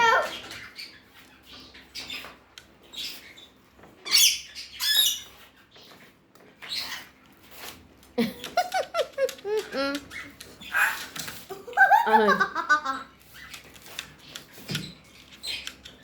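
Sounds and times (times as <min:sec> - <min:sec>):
parrot squawking: 0:04.0 - 0:05.3, 0:10.0 - 0:11.2.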